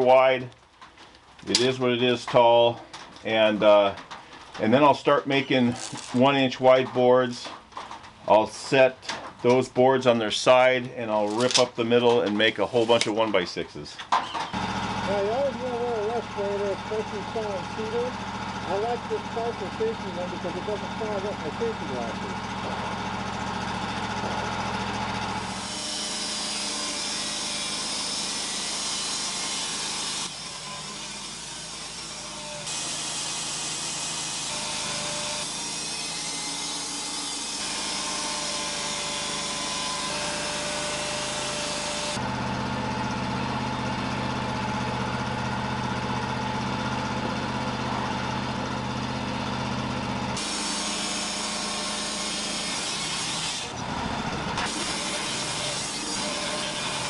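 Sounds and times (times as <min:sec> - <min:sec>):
sawmill engine running: 0:00.0 - 0:57.0
band blade sawing wood: 0:04.7 - 0:06.8, 0:12.3 - 0:13.2, 0:24.2 - 0:42.2, 0:50.4 - 0:53.8, 0:54.5 - 0:57.0.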